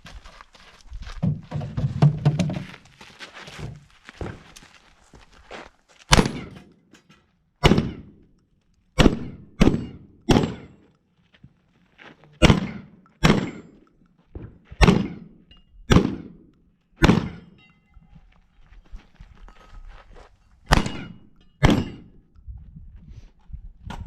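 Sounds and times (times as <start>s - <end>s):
shotguns firing: 6.1s - 6.6s, 7.6s - 8.2s, 9.0s - 10.8s, 12.4s - 13.8s, 14.8s - 17.6s, 20.7s - 22.1s.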